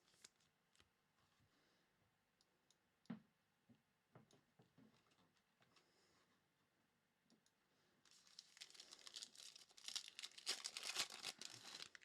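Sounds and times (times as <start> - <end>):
foil wrapper crinkling and tearing: 8.1 - 12.0.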